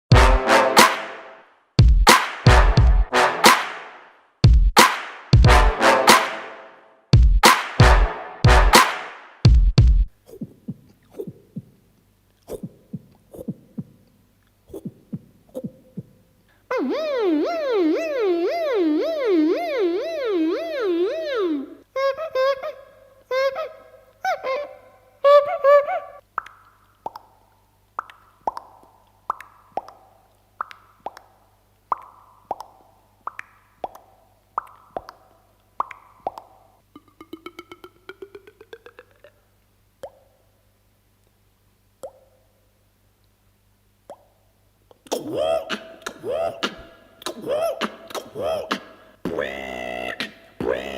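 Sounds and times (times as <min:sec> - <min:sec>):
man imitating a heartbeat: 0:09.5 - 0:11.8, 0:12.5 - 0:14.0, 0:14.7 - 0:16.2, 0:37.0 - 0:39.3, 0:44.9 - 0:50.9
mouth-made pops: 0:10.2 - 0:16.2, 0:26.2 - 0:40.4, 0:42.0 - 0:42.4, 0:44.0 - 0:50.9
loud warbling wail: 0:16.7 - 0:21.8.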